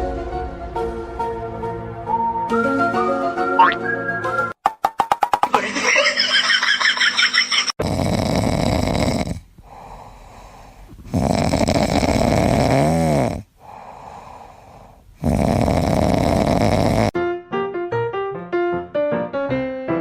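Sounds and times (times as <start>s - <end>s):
loud snoring: 7.7s - 17.2s
quiet breaths: 8.4s - 17.2s.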